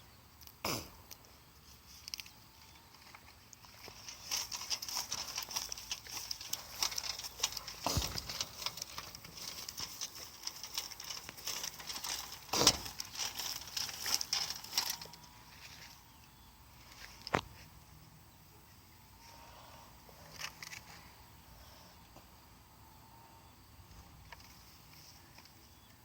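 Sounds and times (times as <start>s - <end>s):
hand tool scraping soil: 3.8s - 15.0s.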